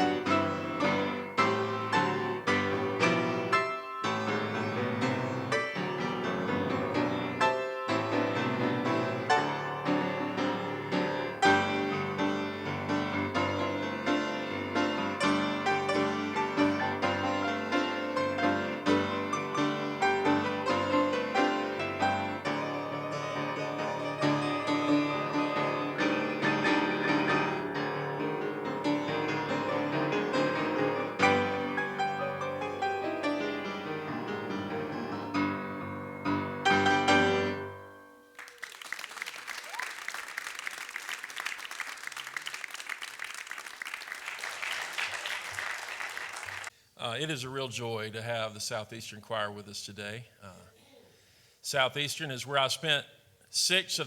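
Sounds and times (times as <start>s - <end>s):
piano music: 0.0s - 38.5s.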